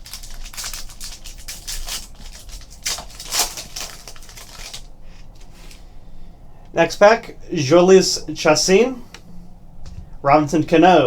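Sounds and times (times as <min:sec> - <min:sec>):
foil wrapper tearing and crinkling: 0:00.0 - 0:05.8
cards rustling: 0:00.0 - 0:05.9.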